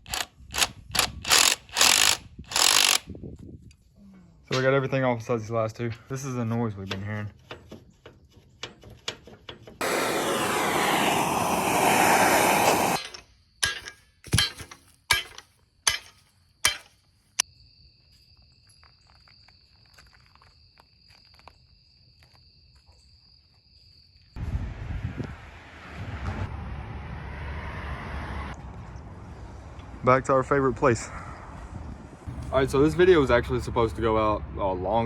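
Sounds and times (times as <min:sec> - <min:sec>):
loud rushing hiss: 0:09.8 - 0:13.0
faint insect chirping: 0:16.2 - 0:24.4.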